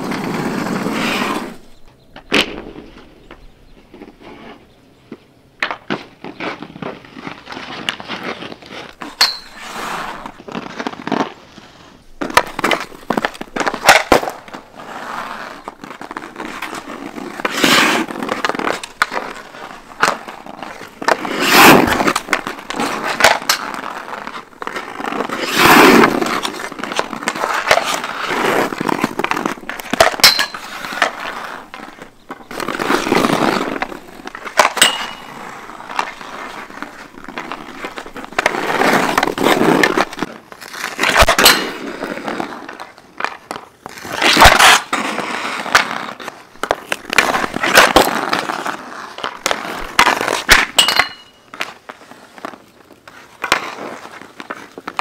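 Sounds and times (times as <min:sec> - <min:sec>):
skate blades scraping on ice: 0:00.0 - 0:55.0
stick and puck clicks: 0:05.6 - 0:11.4, 0:12.2 - 0:55.0.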